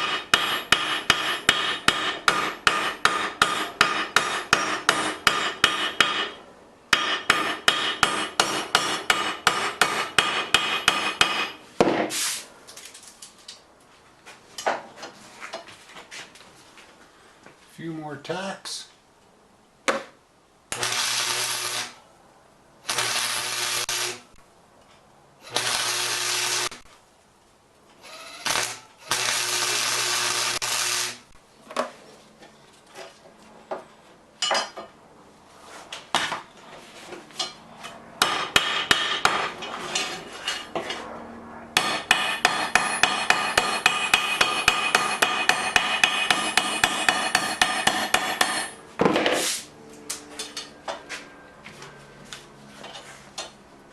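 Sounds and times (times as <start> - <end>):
electric welder crackling hiss: 20.7 - 22.0, 22.9 - 24.4, 25.5 - 26.8, 28.1 - 31.3
tapping and scraping on metal: 41.8 - 48.8.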